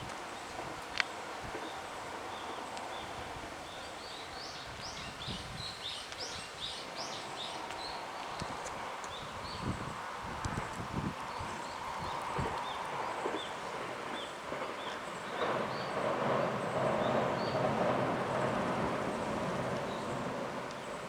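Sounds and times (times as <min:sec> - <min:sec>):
train running: 0:11.0 - 0:21.0
wheels knocking on rail joints: 0:12.1 - 0:21.0.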